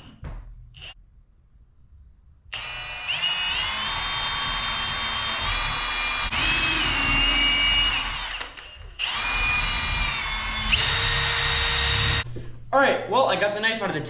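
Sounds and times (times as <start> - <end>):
electric drill boring into wood: 2.6 - 12.2.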